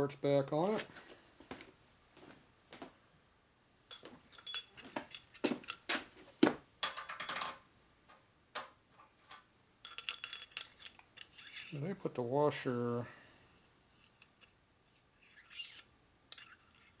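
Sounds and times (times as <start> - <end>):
metal parts clinking and rattling: 3.9 - 5.9, 6.8 - 7.6, 9.3 - 11.8, 15.5 - 16.9.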